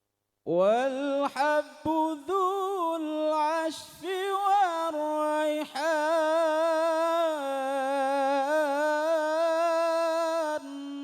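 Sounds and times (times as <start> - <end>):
person reciting melodically: 0.5 - 11.0.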